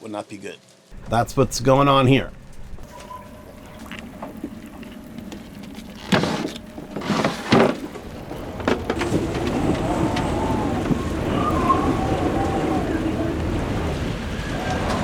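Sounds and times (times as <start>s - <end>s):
wind rushes: 0.9s - 15.0s
wavering wind whistle: 8.0s - 15.0s.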